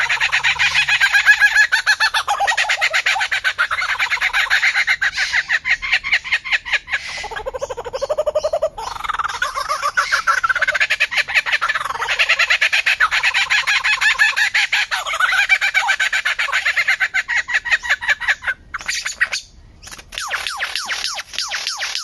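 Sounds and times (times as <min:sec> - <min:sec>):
bird calling in rapid short notes: 0:18.8 - 0:22.0.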